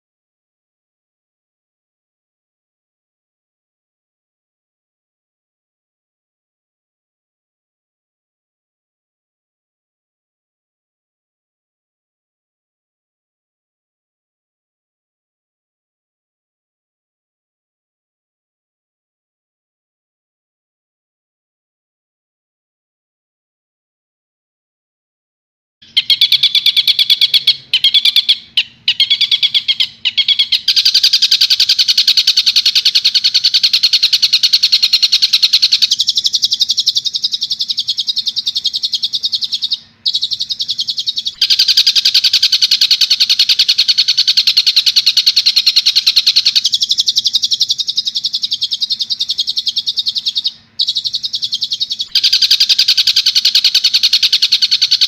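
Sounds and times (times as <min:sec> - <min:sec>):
faint steady hum: 0:25.8 - 0:55.0
bird chatter: 0:25.9 - 0:55.0.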